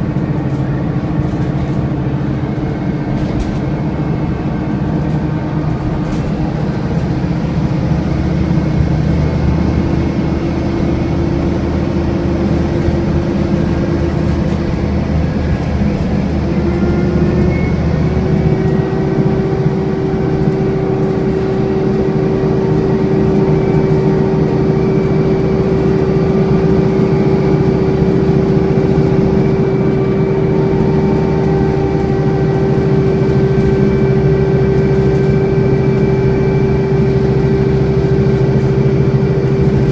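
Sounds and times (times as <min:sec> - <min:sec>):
bus engine whining: 0:00.0 - 0:39.9.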